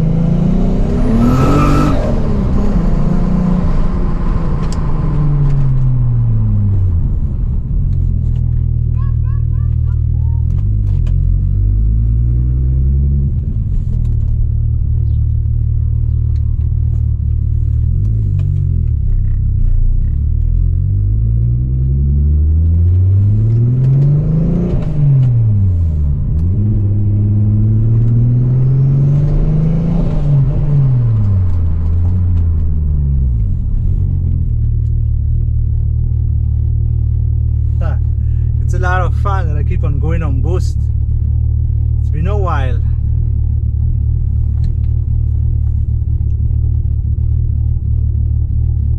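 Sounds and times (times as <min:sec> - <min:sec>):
car engine revving while driving: 0:00.0 - 0:08.9, 0:10.4 - 0:48.9.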